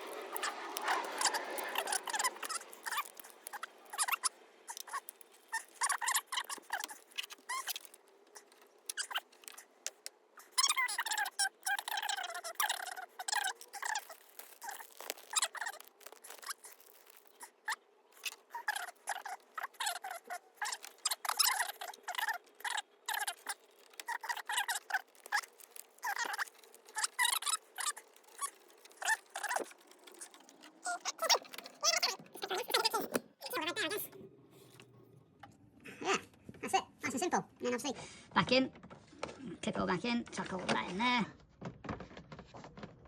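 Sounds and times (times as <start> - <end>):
plastic and metal parts clicking: 0.0 - 34.0.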